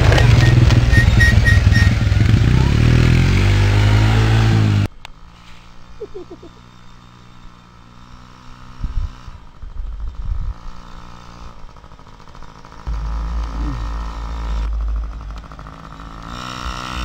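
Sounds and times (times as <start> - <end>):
atv engine running close: 0.0 - 17.0
distant atv engine: 0.0 - 17.0
low thumps: 12.8 - 17.0.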